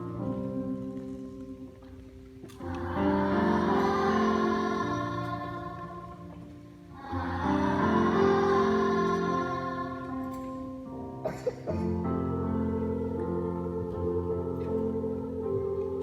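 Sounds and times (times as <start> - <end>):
chorus singing held chords: 0.0 - 16.0.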